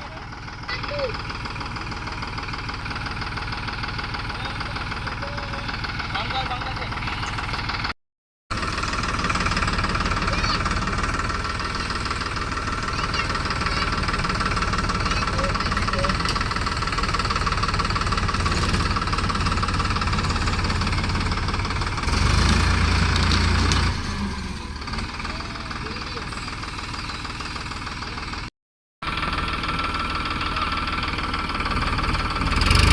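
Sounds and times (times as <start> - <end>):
tractor diesel engine clattering: 0.0 - 32.9.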